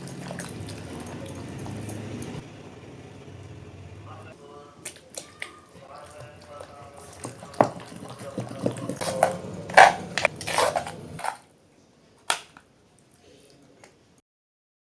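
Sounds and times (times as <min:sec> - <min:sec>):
utensils clinking against dishes: 0:00.0 - 0:02.4, 0:05.2 - 0:11.4.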